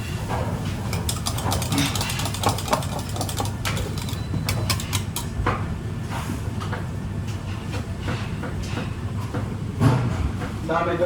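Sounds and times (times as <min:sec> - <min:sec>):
dishes and utensils clattering: 0:00.4 - 0:05.5.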